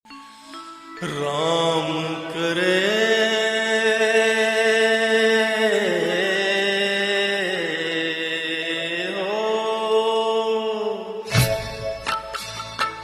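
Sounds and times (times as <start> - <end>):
sung held melodic tone: 0.1 - 3.1.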